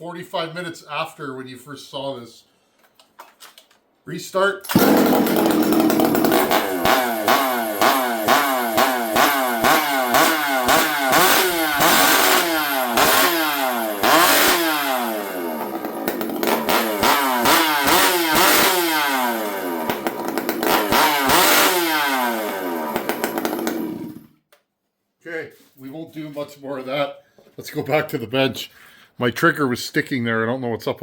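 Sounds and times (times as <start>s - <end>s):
chainsaw engine revving: 4.7s - 24.3s.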